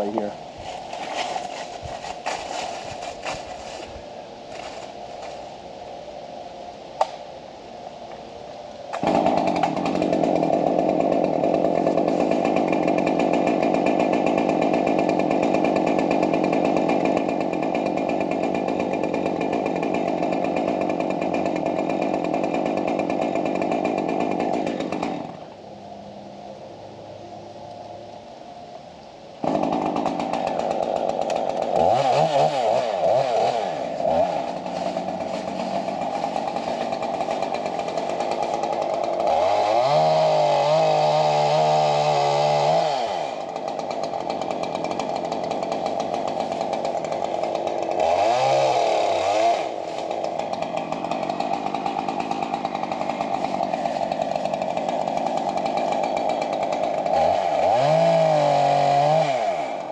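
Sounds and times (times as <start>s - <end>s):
chainsaw revving: 9.0s - 25.5s, 29.4s - 59.9s.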